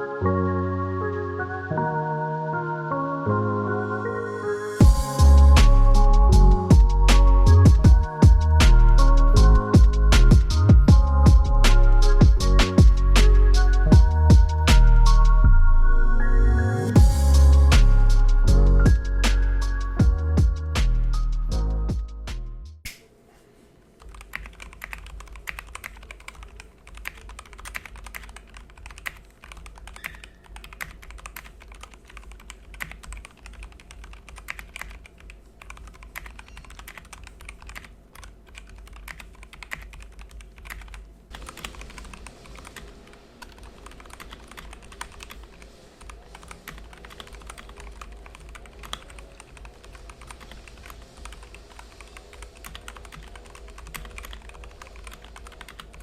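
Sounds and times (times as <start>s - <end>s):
mechanical keyboard typing: 24.0s - 56.0s.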